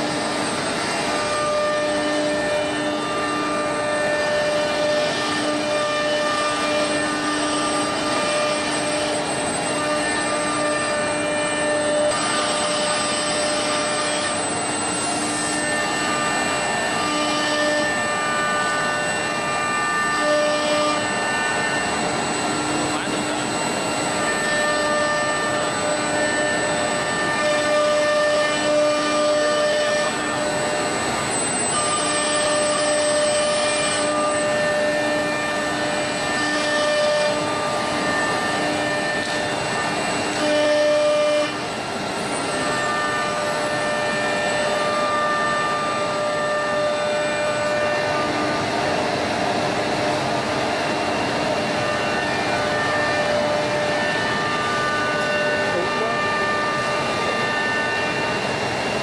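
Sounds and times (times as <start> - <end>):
machinery whirring: 0.0 - 59.0
steady humming tones: 0.0 - 59.0.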